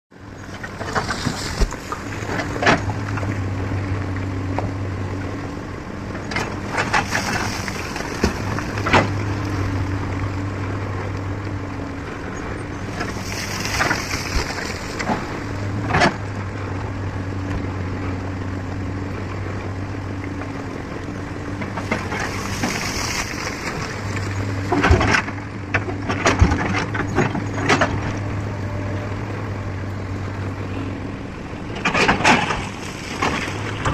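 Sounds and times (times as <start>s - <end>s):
excavator engine humming: 0.1s - 33.9s.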